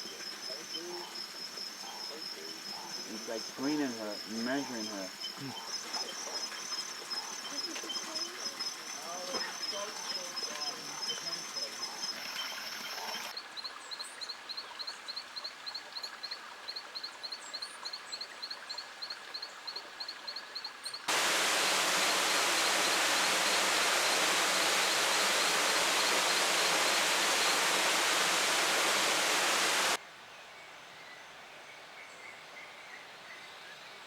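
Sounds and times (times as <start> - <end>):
cricket chirping: 21.1 - 30.0
loud steady hiss: 21.1 - 30.0.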